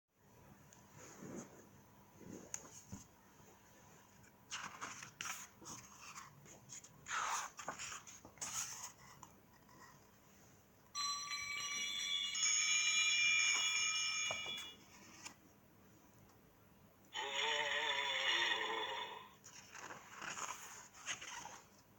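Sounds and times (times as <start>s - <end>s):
book rustling and clicking: 4.2s - 9.9s, 19.4s - 21.9s
bell sound effect from speaker: 11.0s - 14.8s.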